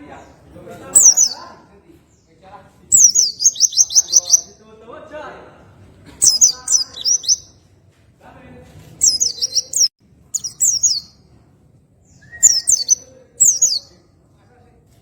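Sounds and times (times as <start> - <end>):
bird singing high chirps: 1.0 - 1.5, 2.9 - 4.6, 6.2 - 7.6, 9.0 - 11.2, 12.0 - 14.0.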